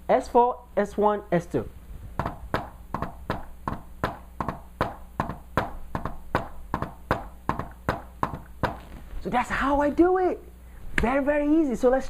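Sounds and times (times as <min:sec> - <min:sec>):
hand taps in heartbeat rhythm: 0:02.2 - 0:08.9.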